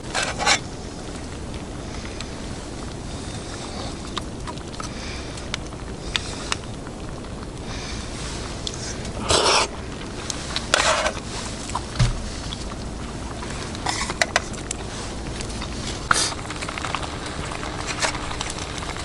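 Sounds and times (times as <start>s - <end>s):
rustling: 0.0s - 1.3s, 7.2s - 19.0s
dull thump: 12.0s - 12.4s.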